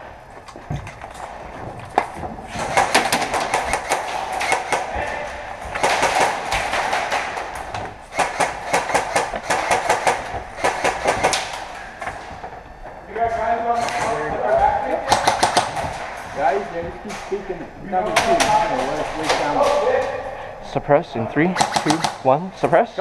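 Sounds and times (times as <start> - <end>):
airsoft gun full-auto fire: 2.6 - 4.9, 5.7 - 7.4, 8.1 - 11.6, 15.1 - 16.1, 21.6 - 22.2.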